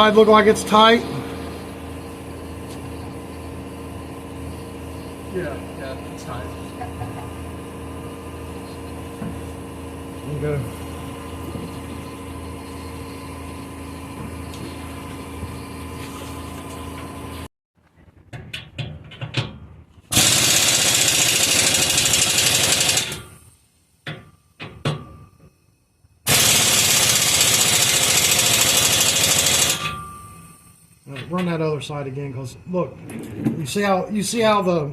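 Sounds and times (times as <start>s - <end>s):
steady hum: 0.0s - 17.5s
impact wrench running down nuts: 20.1s - 23.2s, 26.3s - 29.9s.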